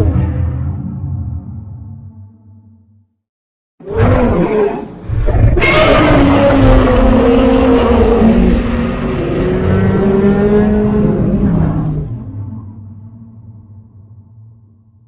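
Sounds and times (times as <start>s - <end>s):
monster roar: 3.8s - 12.2s.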